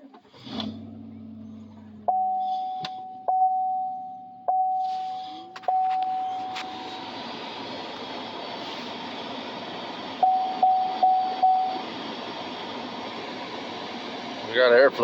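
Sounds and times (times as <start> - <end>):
dashboard warning chime: 2.0 - 7.0, 10.2 - 11.9
heater blower rushing air: 4.7 - 15.0.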